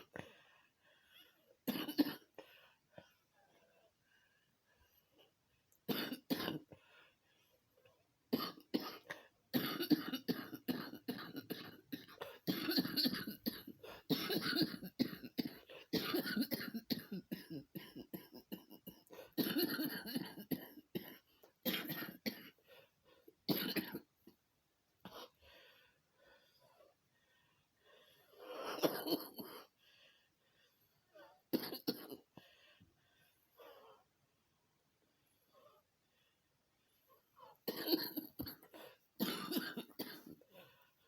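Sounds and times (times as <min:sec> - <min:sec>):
person coughing: 0:01.6 - 0:02.4, 0:05.9 - 0:06.7, 0:08.4 - 0:22.6, 0:23.5 - 0:24.4, 0:28.6 - 0:29.7, 0:31.5 - 0:32.3, 0:37.6 - 0:40.6.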